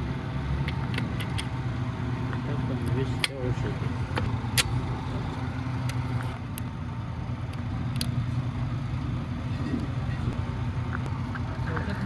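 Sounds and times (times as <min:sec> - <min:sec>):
low engine hum: 0:00.0 - 0:12.0.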